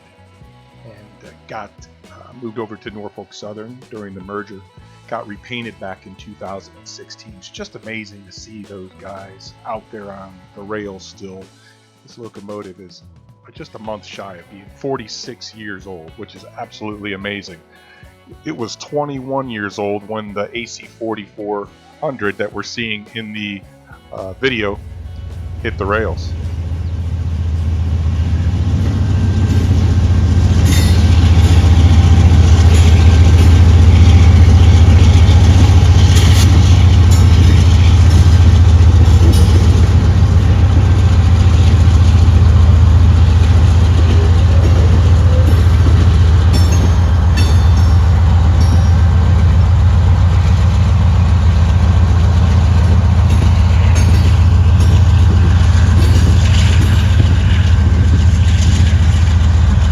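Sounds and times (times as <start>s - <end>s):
diesel locomotive engine rumble: 24.0s - 59.9s
wheels clicking and clanking on rails: 24.4s - 59.9s.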